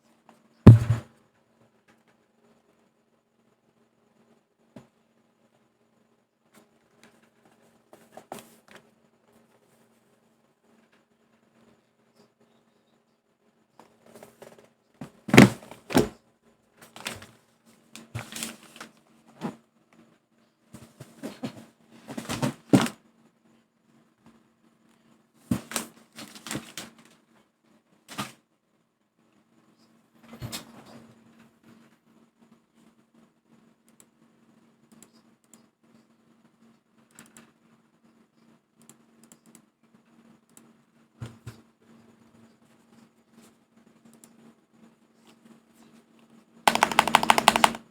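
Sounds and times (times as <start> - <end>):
mechanical keyboard typing: 46.7 - 47.9.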